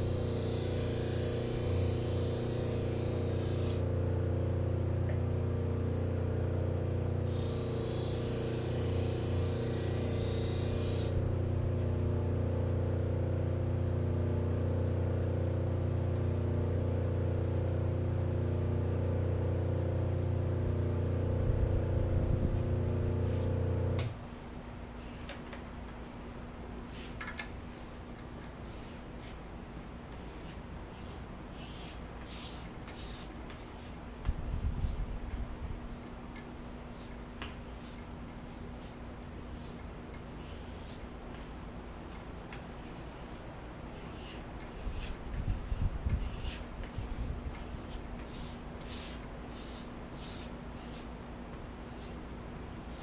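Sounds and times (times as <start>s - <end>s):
grinder humming: 0.0s - 17.1s, 20.0s - 24.1s
knife blade grinding hiss: 7.3s - 11.2s, 30.2s - 34.0s, 42.6s - 51.1s.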